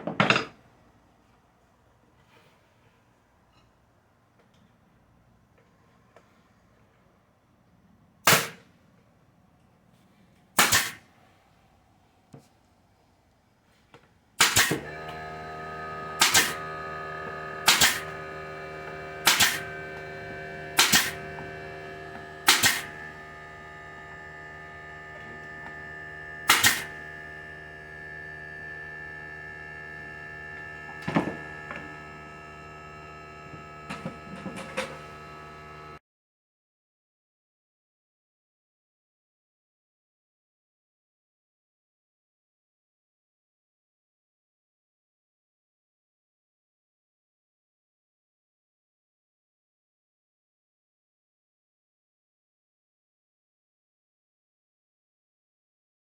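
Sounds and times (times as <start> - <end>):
hammer driving nails into wood: 10.6 - 11.0, 14.4 - 14.8, 16.2 - 16.6, 17.7 - 18.0, 19.2 - 19.6, 20.8 - 21.2, 22.5 - 22.9, 26.5 - 26.9.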